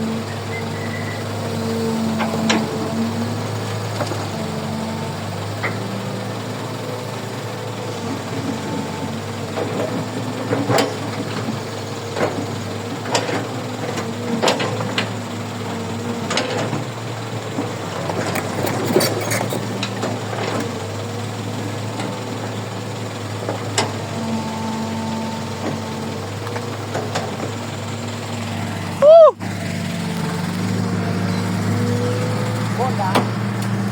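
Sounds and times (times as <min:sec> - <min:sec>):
diesel excavator engine running: 0:00.0 - 0:33.9
digging clanks and knocks: 0:17.6 - 0:20.7.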